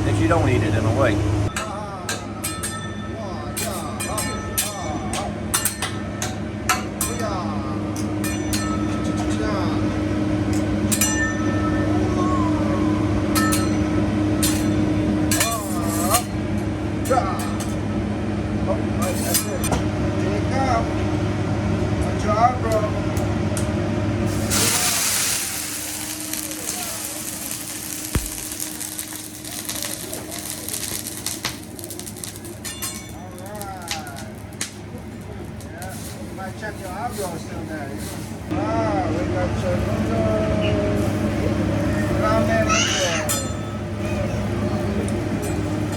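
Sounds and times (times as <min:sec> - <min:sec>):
murmur of restaurant diners: 0:00.0 - 0:23.2, 0:24.3 - 0:45.9
dishes clinking: 0:01.5 - 0:09.6, 0:10.5 - 0:12.1, 0:13.2 - 0:17.8, 0:28.1 - 0:34.9, 0:43.0 - 0:44.4.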